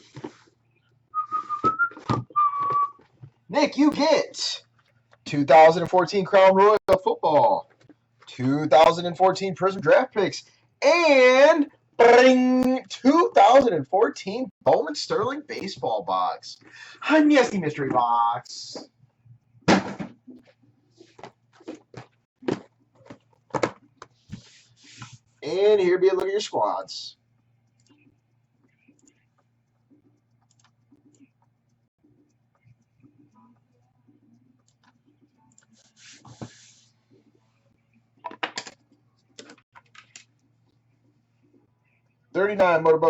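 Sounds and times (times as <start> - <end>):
computer keyboard typing: 27.6 - 31.5.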